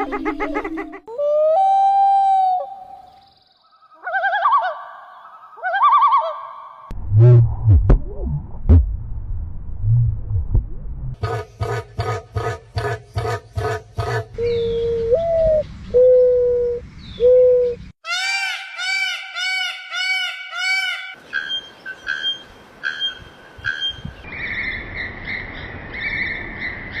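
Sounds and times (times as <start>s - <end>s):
repeated high bird calls: 11.2s - 27.0s.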